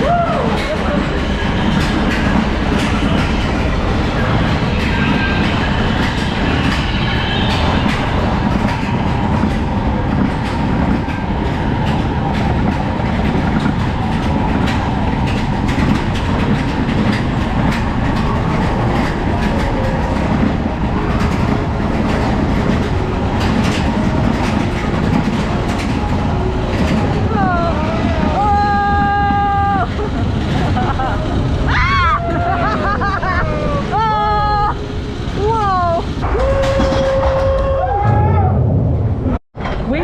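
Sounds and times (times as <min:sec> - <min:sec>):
wheels rattling and clicking: 0:00.0 - 0:31.7
roller coaster rumbling: 0:00.0 - 0:40.0.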